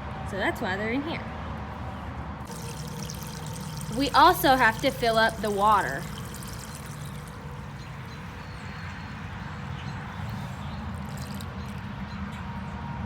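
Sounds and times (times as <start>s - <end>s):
water running into a trough: 2.5s - 8.4s, 10.2s - 11.8s.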